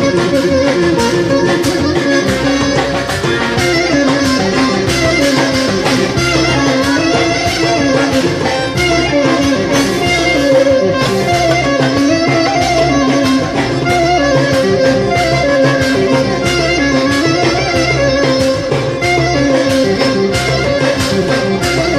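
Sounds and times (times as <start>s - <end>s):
clarinet melody: 0.0s - 21.9s
plucked bouzouki: 0.0s - 21.9s
steady drum beat: 0.0s - 21.9s.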